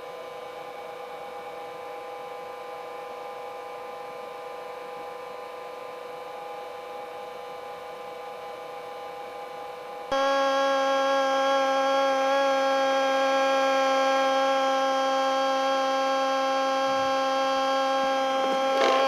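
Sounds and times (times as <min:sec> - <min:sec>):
controller electronic whine: 0:10.2 - 0:19.0.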